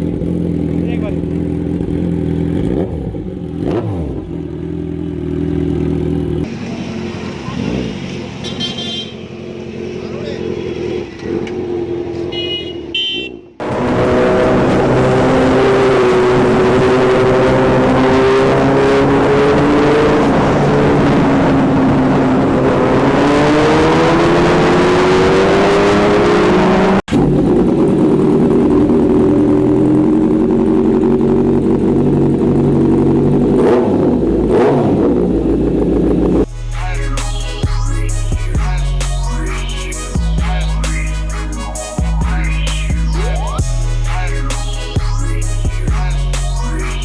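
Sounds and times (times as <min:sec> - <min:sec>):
motorcycle engine running hard: 0:00.0 - 0:12.7, 0:13.6 - 0:36.5.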